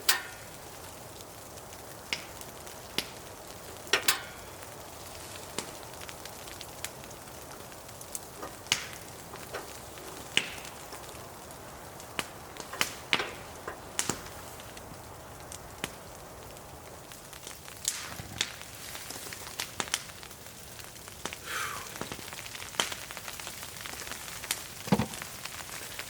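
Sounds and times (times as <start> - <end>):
sharp pops over hiss: 0.0 - 0.8, 3.9 - 5.8, 8.1 - 11.1, 12.0 - 14.7, 17.8 - 20.1, 21.2 - 23.3, 24.4 - 26.0
wood fire crackling: 0.0 - 26.0.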